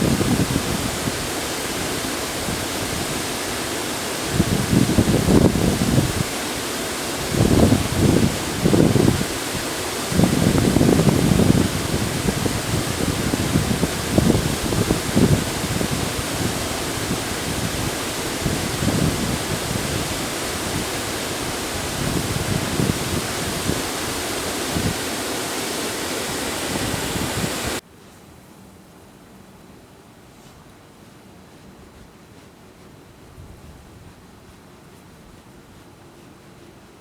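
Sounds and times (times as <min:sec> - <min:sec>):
river water flowing: 0:00.0 - 0:27.8
wind buffeting microphone: 0:00.0 - 0:27.8
faint hiss: 0:00.0 - 0:28.4.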